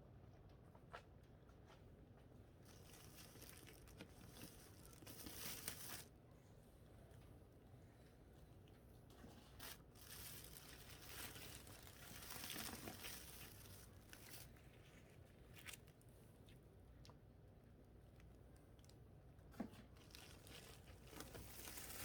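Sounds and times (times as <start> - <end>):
dry ice crackling and hissing: 2.6 - 6.1, 9.4 - 16.0, 20.0 - 22.0.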